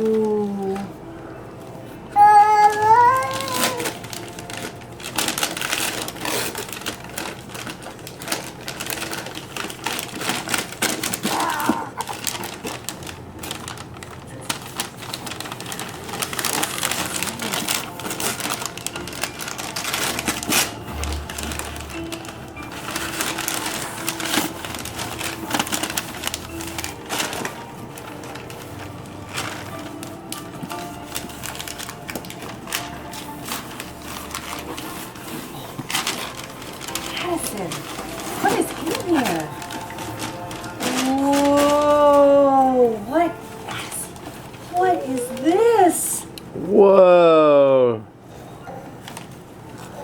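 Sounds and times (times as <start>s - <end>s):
gift wrap crinkling and tearing: 0.0s - 47.7s, 49.0s - 50.0s.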